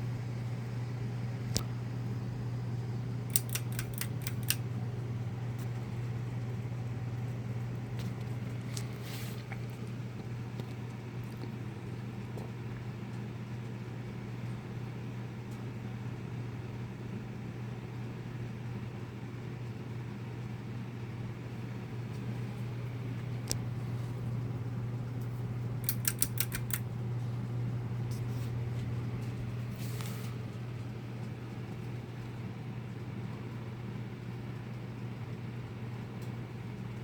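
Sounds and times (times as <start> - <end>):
ceiling fan motor hum: 0.0 - 37.0
short clicks: 3.3 - 4.6, 25.8 - 26.9.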